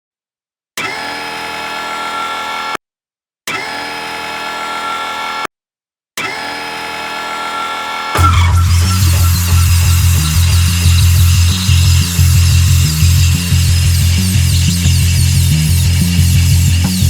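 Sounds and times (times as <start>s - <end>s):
music: 8.1s - 17.0s
dental drill whining: 8.2s - 17.0s.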